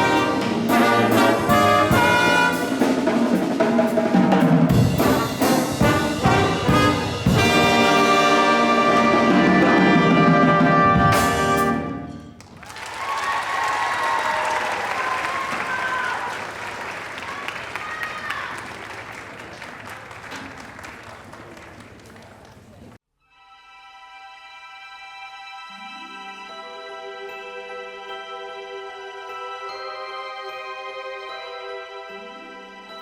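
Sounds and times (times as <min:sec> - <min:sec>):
brass ensemble playing chords: 0:00.0 - 0:12.4
audience applause: 0:12.4 - 0:23.0.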